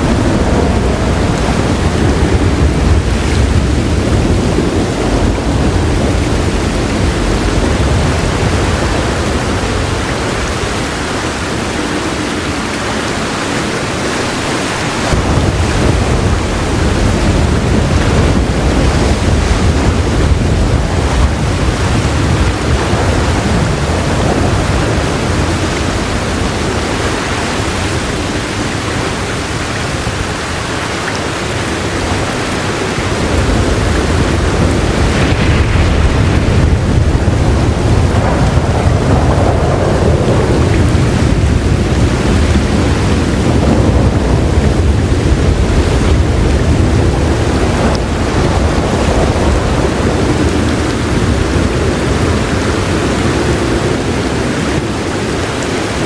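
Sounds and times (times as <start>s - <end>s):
heavy rain falling: 0.0s - 56.0s
thunder rolling: 0.0s - 56.0s.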